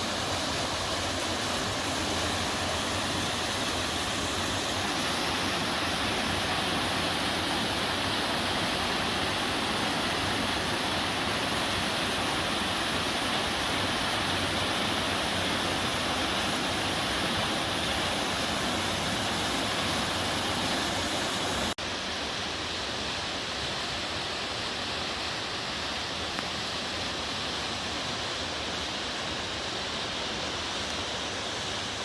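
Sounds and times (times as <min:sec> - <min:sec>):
waterfall splashing into stream: 0:00.0 - 0:22.2.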